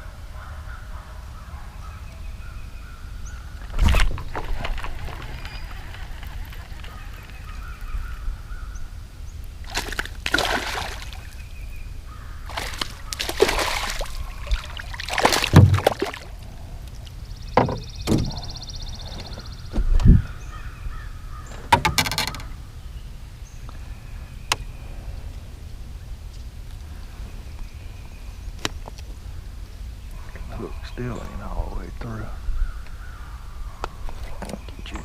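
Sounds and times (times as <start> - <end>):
water splashing: 3.6 - 8.0, 9.6 - 11.4, 12.4 - 16.7
sharp knocks: 15.3 - 16.2, 17.6 - 18.5, 21.7 - 22.5.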